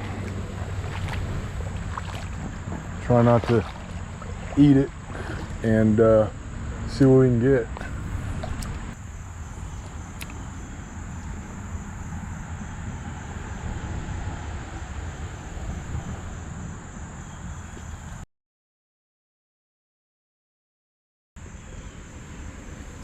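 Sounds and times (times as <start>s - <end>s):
insects droning: 0.0s - 18.2s, 21.4s - 23.0s
low steady rumble: 0.0s - 18.2s.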